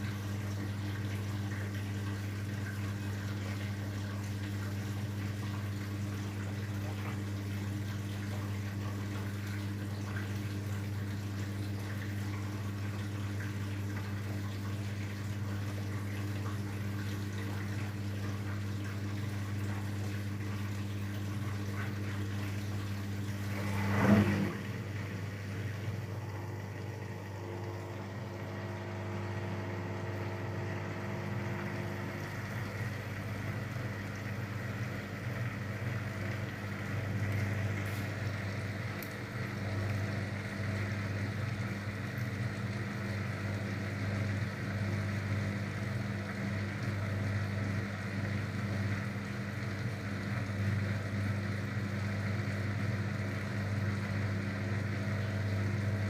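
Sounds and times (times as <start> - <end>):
washing machine humming: 0.0 - 56.0
water moving: 21.0 - 28.9.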